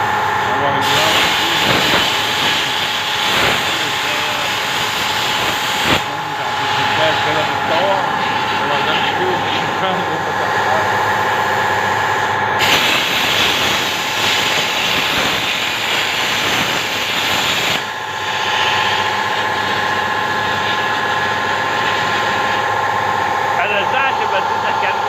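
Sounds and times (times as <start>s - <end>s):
cnc machine whining: 0.0s - 25.0s
loud hiss: 0.8s - 10.1s, 12.6s - 22.8s.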